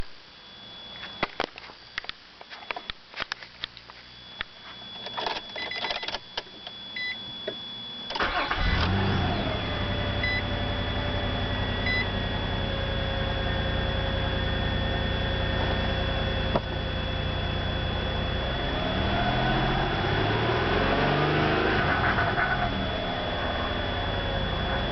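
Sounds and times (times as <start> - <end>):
car engine starting and idling: 8.1 - 16.8
faint short beeps: 9.3 - 11.0, 11.8 - 12.3.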